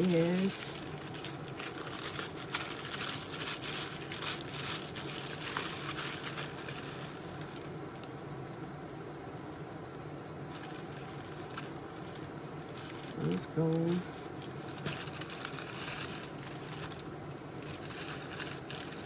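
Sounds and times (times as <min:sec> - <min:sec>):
pouch and packaging rustling: 0:00.0 - 0:08.2, 0:10.5 - 0:19.0.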